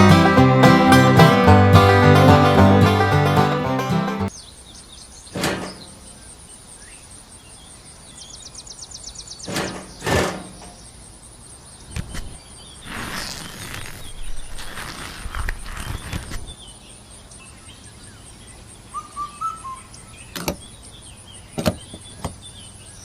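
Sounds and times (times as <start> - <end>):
brushing or rustling: 12.8 - 16.6.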